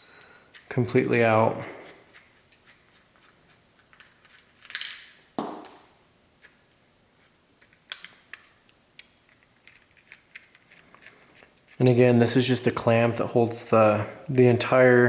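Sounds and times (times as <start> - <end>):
small hard parts clicking: 7.9 - 11.8.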